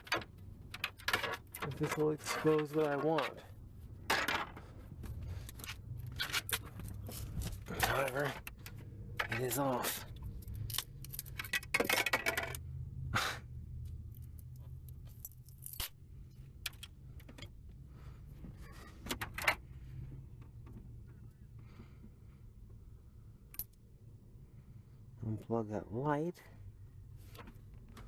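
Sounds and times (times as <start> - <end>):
plastic and metal parts clicking: 10.2 - 12.6.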